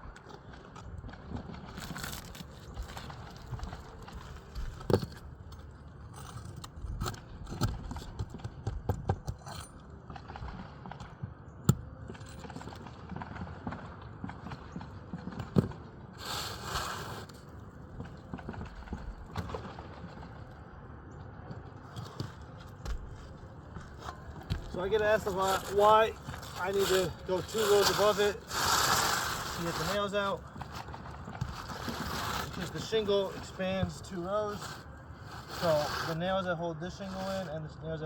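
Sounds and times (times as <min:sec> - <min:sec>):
rustling scrape: 0:16.2 - 0:18.6, 0:21.9 - 0:37.5.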